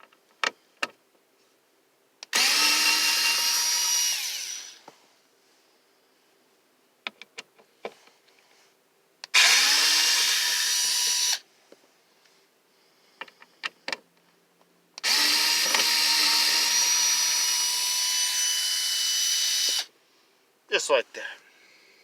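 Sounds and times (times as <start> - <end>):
cordless screwdriver driving screw: 2.2 - 4.8, 9.3 - 11.4, 15.0 - 19.9.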